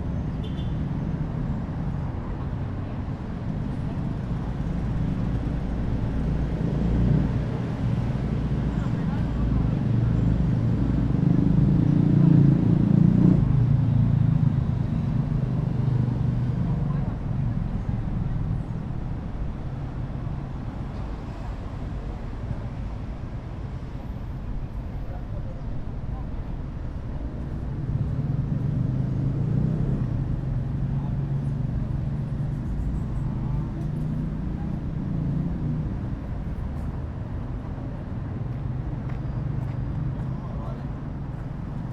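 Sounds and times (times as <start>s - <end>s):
city traffic drone: 0.0s - 41.9s.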